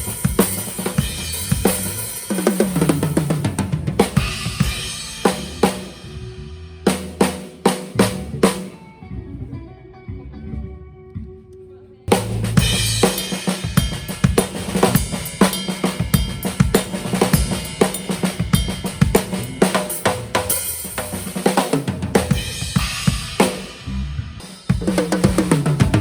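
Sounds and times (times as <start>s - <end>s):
drum kit groove: 0.0s - 8.9s, 12.1s - 26.0s
cymbal crash: 4.2s - 6.4s.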